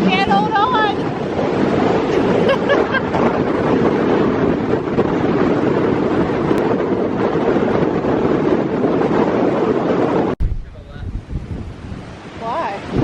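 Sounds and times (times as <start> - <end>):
strong wind blowing on microphone: 0.0 - 13.0.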